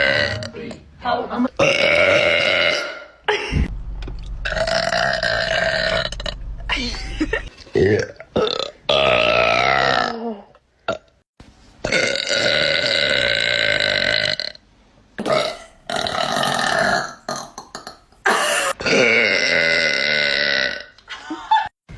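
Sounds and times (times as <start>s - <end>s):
girl burping: 18.2s - 20.9s.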